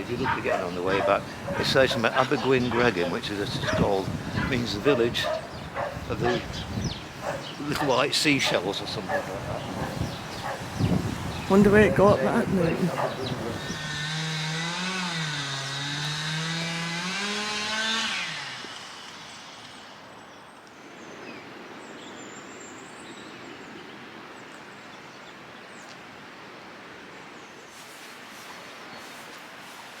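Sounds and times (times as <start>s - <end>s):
vehicle engine passing by: 12.4s - 19.9s
outdoor hiss: 27.4s - 30.0s.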